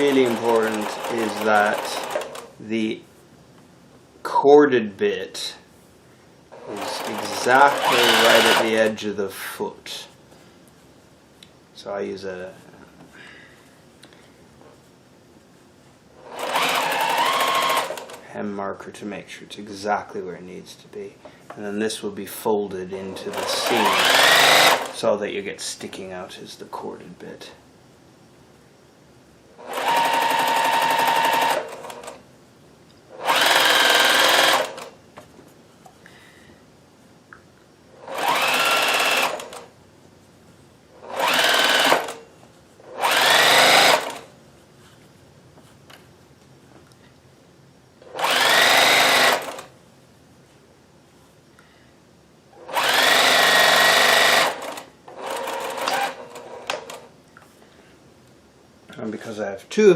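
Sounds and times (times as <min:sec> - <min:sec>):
sewing machine stitching: 0:00.0 - 0:02.5, 0:06.5 - 0:08.9, 0:16.2 - 0:18.2, 0:23.1 - 0:25.0, 0:29.6 - 0:32.2, 0:33.1 - 0:35.0, 0:38.0 - 0:39.7, 0:41.0 - 0:42.2, 0:42.8 - 0:44.3, 0:48.0 - 0:49.7, 0:52.6 - 0:57.1.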